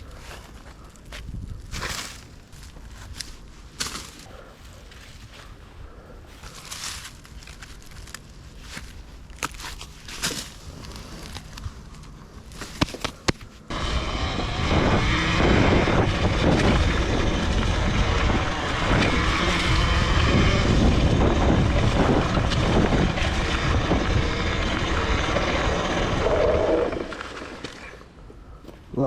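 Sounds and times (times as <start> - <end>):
wind buffeting microphone: 1.1 - 1.9, 13.7 - 28.2
road noise: 2.0 - 28.8.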